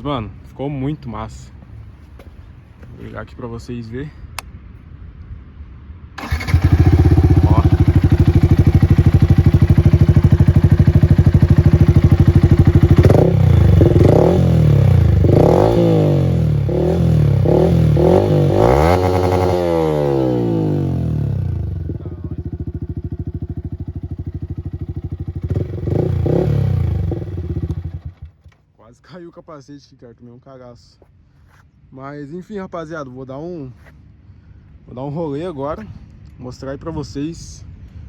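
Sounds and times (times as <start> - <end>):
motorcycle engine idling: 6.2 - 15.4, 19.1 - 28.4
motorcycle engine revving: 6.2 - 28.4.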